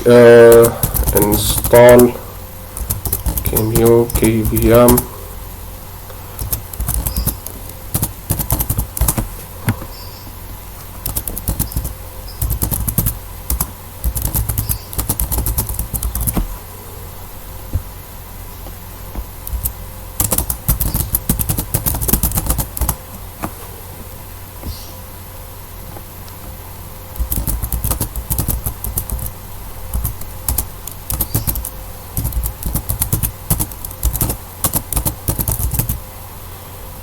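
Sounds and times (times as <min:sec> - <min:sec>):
keyboard typing: 0:00.1 - 0:02.1, 0:02.8 - 0:05.1, 0:06.4 - 0:09.8, 0:11.0 - 0:16.6, 0:19.4 - 0:23.0, 0:27.2 - 0:29.3, 0:29.9 - 0:36.0.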